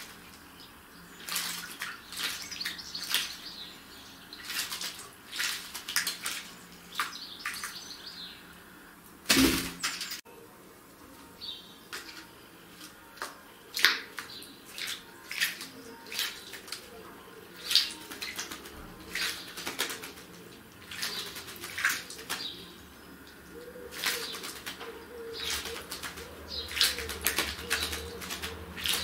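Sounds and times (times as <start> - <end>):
bird splashing in water: 0.0 - 8.2, 9.2 - 10.2, 11.9 - 29.0
wings flapping: 17.6 - 22.6, 23.9 - 29.0.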